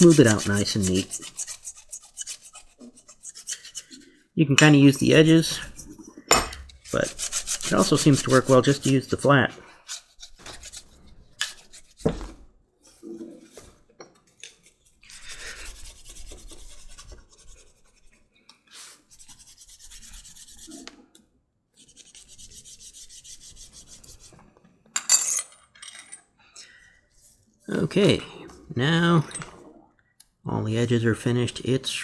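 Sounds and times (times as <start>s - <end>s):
glass burnisher rubbing leather: 0.0s - 4.0s, 6.8s - 12.1s.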